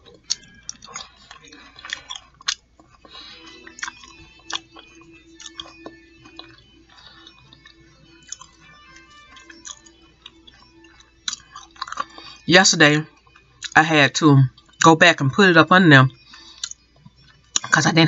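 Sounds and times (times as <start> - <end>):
chewing crunchy fried fish: 0.0 - 12.5, 13.1 - 13.8, 16.2 - 17.8.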